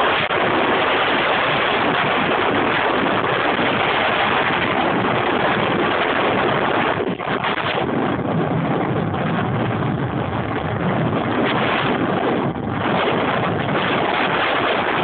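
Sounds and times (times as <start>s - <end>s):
wind rushing on microphone: 0.0s - 15.0s.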